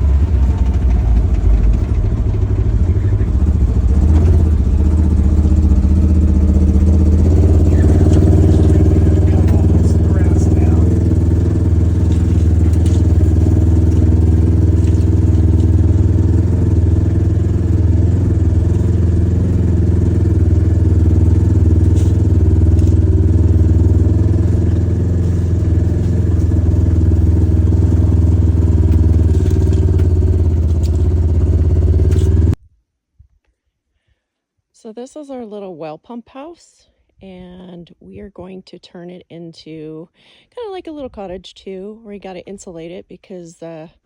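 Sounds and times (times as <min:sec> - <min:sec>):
engine droning with faint clatter: 0:00.0 - 0:32.6.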